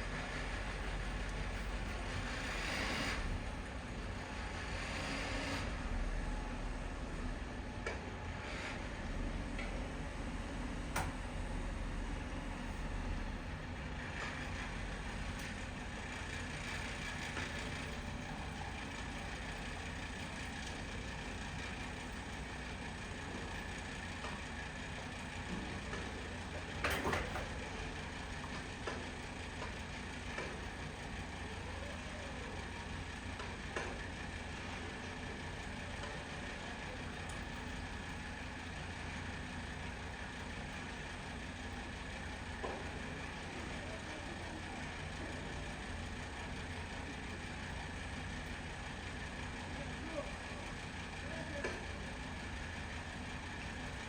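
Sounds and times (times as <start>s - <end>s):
heavy machine engine rumbling: 11.7s - 33.4s.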